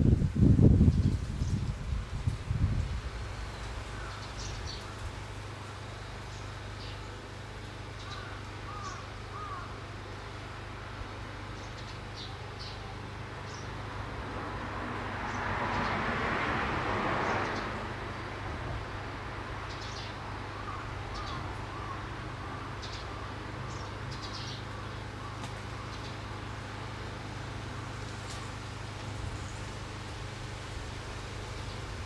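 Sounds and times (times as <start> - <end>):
vehicle passing: 13.8 - 19.4
small birds chirping: 19.7 - 26.5.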